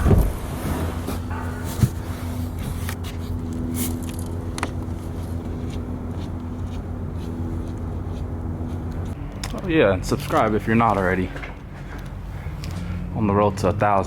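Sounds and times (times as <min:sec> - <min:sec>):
vehicle engine humming: 0:00.0 - 0:14.0.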